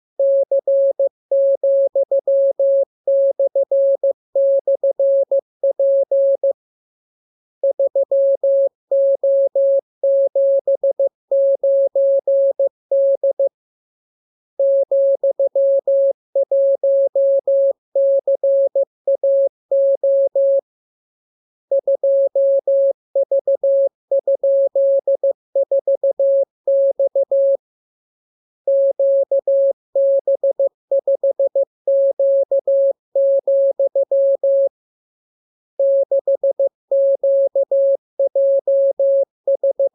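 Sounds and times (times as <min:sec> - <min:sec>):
morse code tone: 0:35.8 - 0:39.9.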